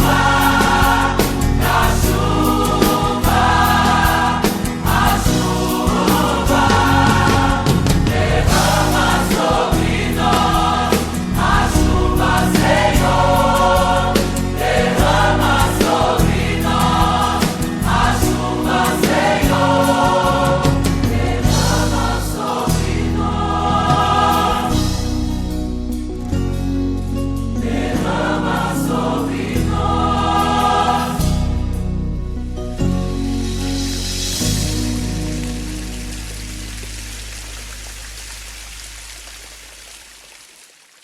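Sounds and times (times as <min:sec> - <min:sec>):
band with steady beat: 0:00.0 - 0:25.2
choir singing: 0:00.0 - 0:25.5, 0:27.5 - 0:31.9.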